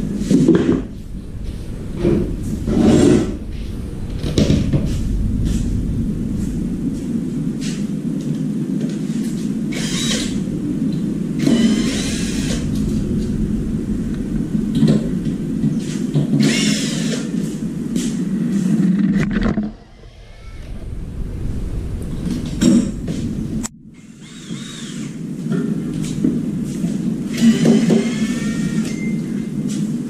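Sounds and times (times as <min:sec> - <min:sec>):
motor running: 0:09.7 - 0:10.6, 0:11.4 - 0:13.6, 0:16.4 - 0:17.3, 0:27.3 - 0:29.0.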